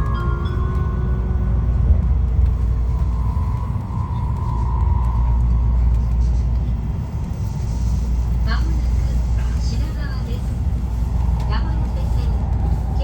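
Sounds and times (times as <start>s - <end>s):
train low rumble: 0.0s - 13.0s.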